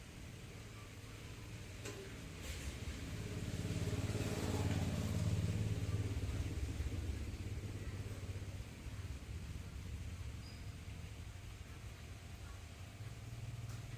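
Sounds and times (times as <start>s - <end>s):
motor engine passing by: 2.2s - 10.4s.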